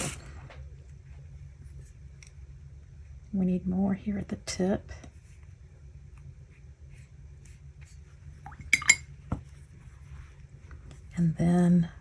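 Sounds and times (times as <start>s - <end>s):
paintbrush clinking against glass jar: 8.5s - 9.1s.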